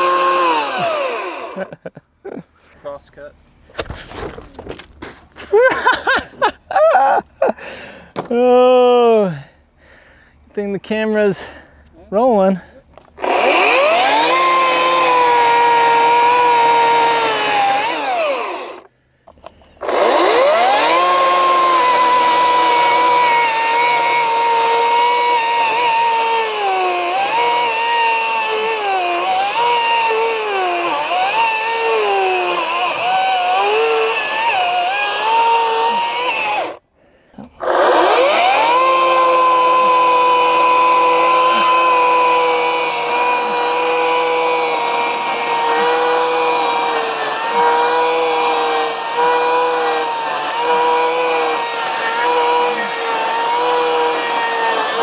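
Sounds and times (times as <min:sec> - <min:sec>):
electric chainsaw cutting wood: 0:00.0 - 0:01.8, 0:13.2 - 0:18.9, 0:19.8 - 0:36.8, 0:37.5 - 0:55.0.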